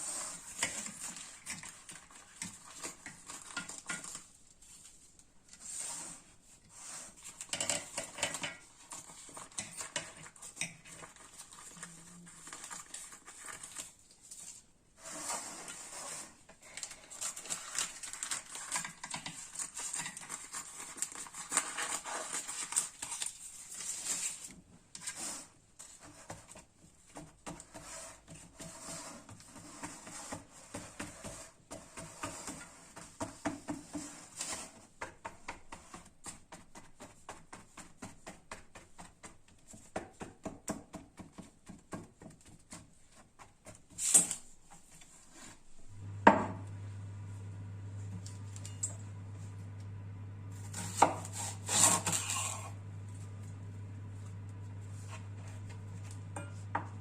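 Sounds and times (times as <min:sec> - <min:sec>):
utensils tapping and clicking: 0:07.4 - 0:11.2, 0:17.4 - 0:20.6.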